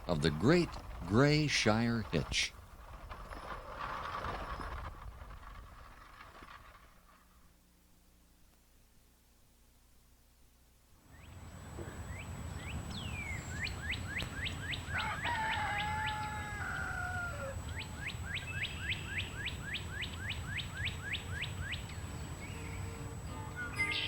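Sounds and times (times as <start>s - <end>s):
bird chirping: 11.1s - 24.0s
drawn-out falling bird call: 11.2s - 24.0s.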